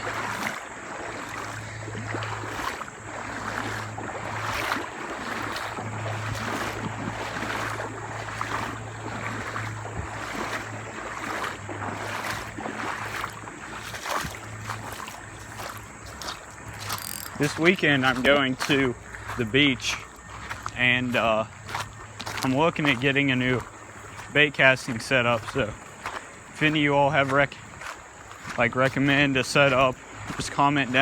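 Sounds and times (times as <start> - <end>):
river current rushing: 0.0 - 21.3
water splashing around wading legs: 0.0 - 31.0.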